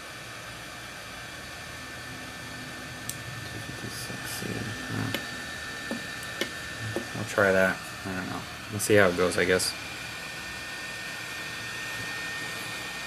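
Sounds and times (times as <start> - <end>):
fan whine: 0.0 - 13.0
hot air blower hissing: 0.0 - 13.0.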